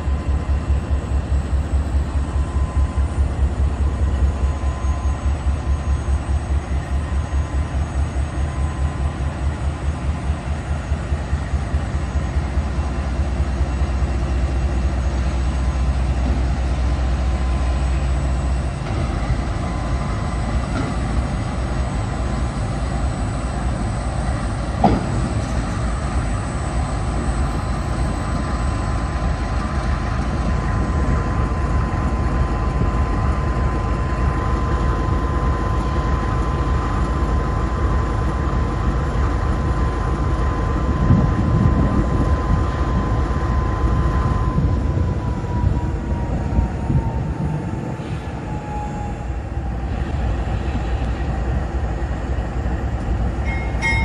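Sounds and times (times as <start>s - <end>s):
freight train wheels rumbling: 0.0s - 54.0s
thin ringing from train wheels: 53.2s - 54.0s.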